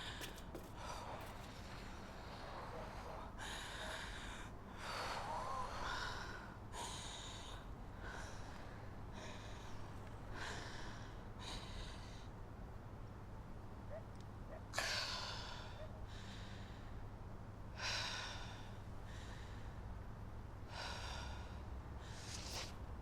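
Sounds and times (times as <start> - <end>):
person breathing heavily: 0.0 - 12.2.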